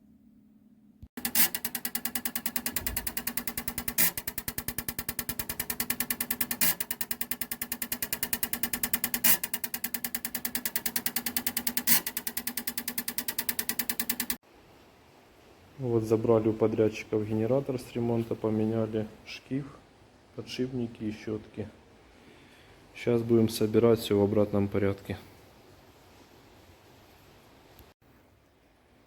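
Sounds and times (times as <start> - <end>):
fuel injectors clicking rapidly: 1.2 - 14.4.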